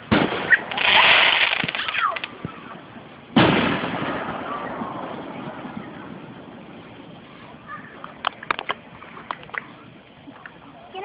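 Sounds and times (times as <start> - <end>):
firework boom rumbling: 0.0 - 2.7, 3.3 - 7.2
fireworks crackling blast: 0.0 - 10.7.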